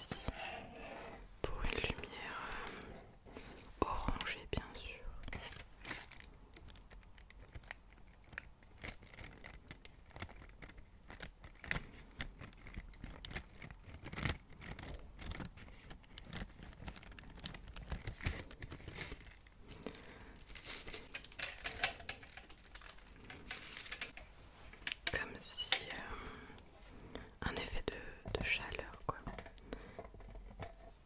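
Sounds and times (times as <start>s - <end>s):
wrapping crinkling and tearing: 5.3s - 25.9s.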